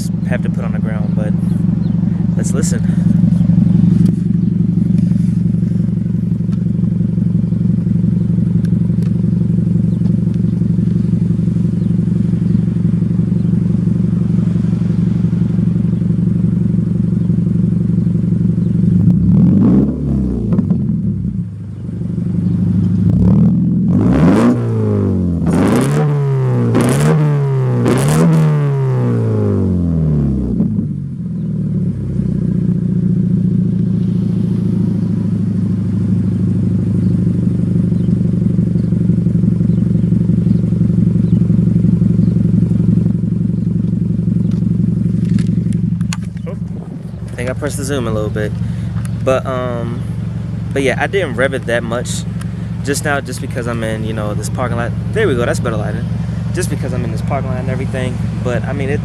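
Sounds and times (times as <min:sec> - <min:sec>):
car engine idling: 0:00.0 - 0:59.0
car engine revving: 0:00.0 - 0:59.0.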